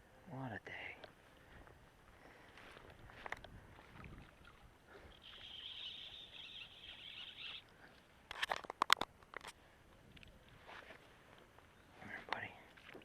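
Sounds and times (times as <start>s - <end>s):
fishing reel clicker buzzing: 5.1s - 7.7s.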